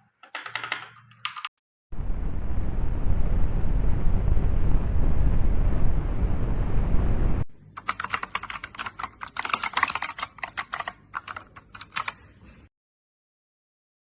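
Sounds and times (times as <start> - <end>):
mechanical keyboard typing: 0.0 - 1.5, 7.8 - 12.2
loud rushing noise: 2.0 - 7.5.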